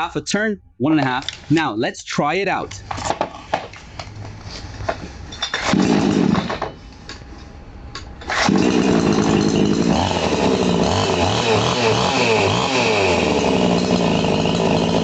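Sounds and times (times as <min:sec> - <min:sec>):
chainsaw engine running: 0:05.6 - 0:06.6, 0:08.3 - 0:15.0.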